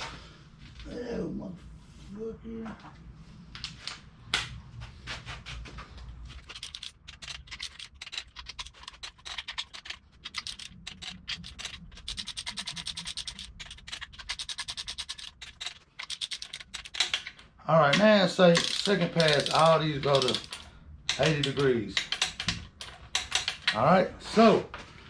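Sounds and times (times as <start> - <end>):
ratchet clicking: 6.4 - 17.3, 18.6 - 23.7.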